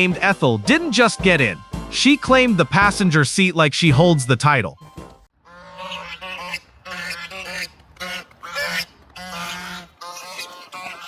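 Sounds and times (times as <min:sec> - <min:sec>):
fowl honking calls: 0:03.9 - 0:11.0.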